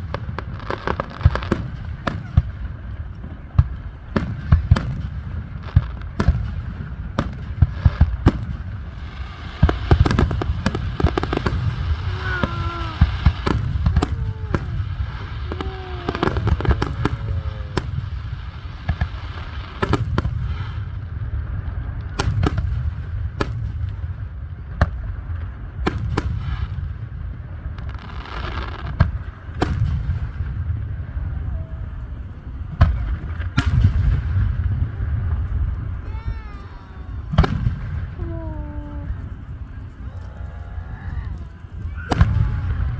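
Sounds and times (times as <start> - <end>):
firework crackles: 0.0 - 42.9
firework shells bursting: 9.5 - 20.4, 32.7 - 40.1
low booming rumble: 28.9 - 42.9.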